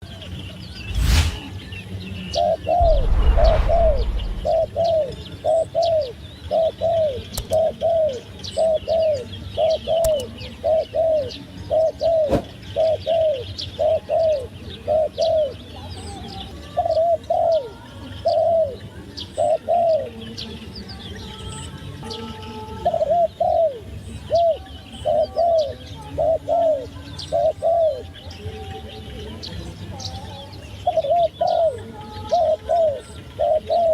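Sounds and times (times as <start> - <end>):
low rumble: 0.8 - 1.7, 2.8 - 4.8
small birds chirping: 4.3 - 33.9.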